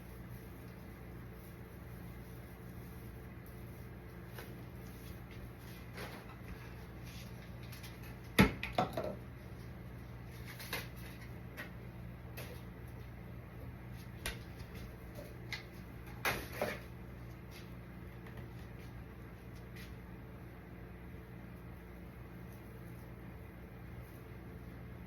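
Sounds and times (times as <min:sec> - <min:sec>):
steady low hum: 0:00.0 - 0:25.0
decorations knocking and clattering: 0:07.7 - 0:09.2.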